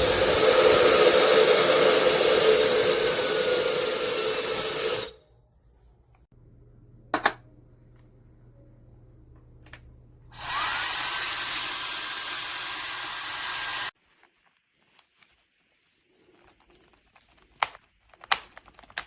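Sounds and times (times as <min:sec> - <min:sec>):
hair dryer blowing: 0:00.0 - 0:05.1, 0:10.3 - 0:14.0
faint hum: 0:05.1 - 0:10.4.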